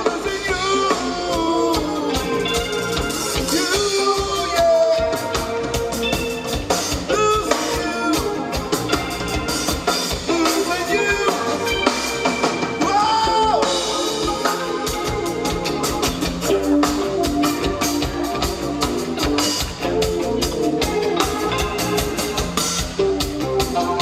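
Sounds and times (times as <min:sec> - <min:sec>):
lead singer singing: 0:00.0 - 0:06.0, 0:06.9 - 0:08.8, 0:10.1 - 0:15.0
bass guitar: 0:00.0 - 0:24.0
drum kit: 0:00.0 - 0:24.0
electric guitar: 0:00.0 - 0:24.0.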